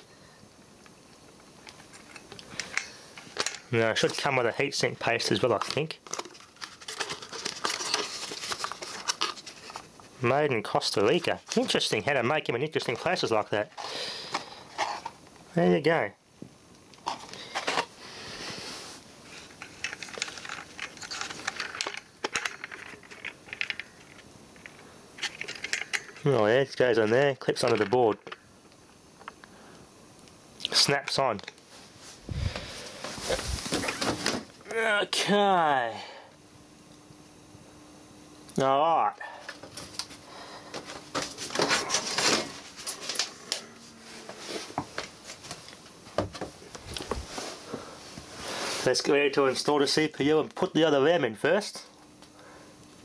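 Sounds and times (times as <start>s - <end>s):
packaging rustle: 5.2s - 9.9s, 19.3s - 26.2s.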